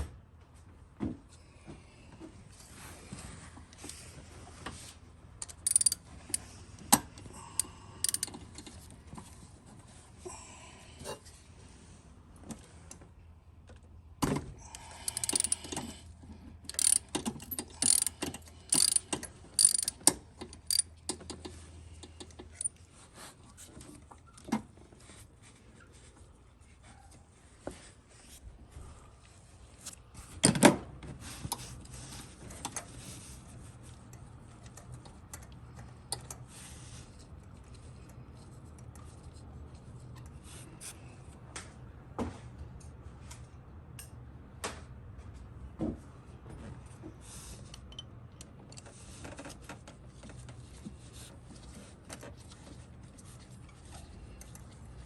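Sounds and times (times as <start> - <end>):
ratchet wrench clicking: 5.4 - 6.4, 7.6 - 8.5, 15.0 - 15.9, 16.7 - 21.0.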